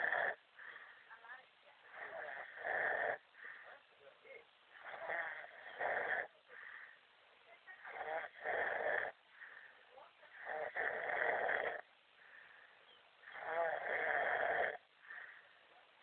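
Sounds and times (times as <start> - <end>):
man snoring heavily: 0.0 - 0.4, 2.0 - 3.2, 4.8 - 6.3, 7.8 - 9.2, 10.4 - 11.9, 13.2 - 15.4
quiet breaths: 0.0 - 16.0.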